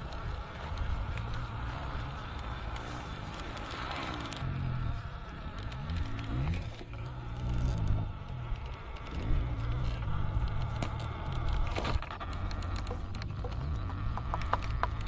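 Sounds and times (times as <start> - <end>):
electric motor and gearbox whirring: 0.0 - 15.0.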